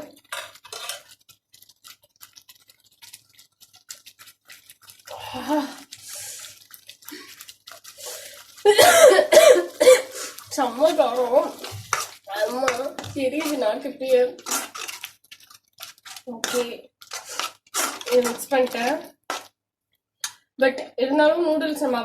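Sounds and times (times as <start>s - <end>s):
hissing breath: 5.1s - 7.4s, 8.0s - 10.5s.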